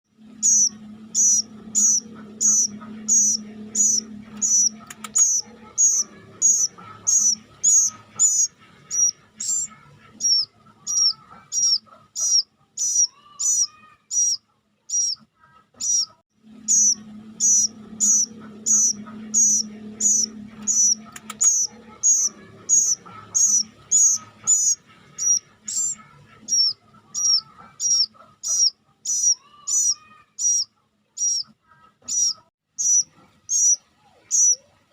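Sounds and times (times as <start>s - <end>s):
low hum: 0.1s - 11.6s, 16.3s - 28.3s
cuckoo shrill calls: 0.4s - 15.2s.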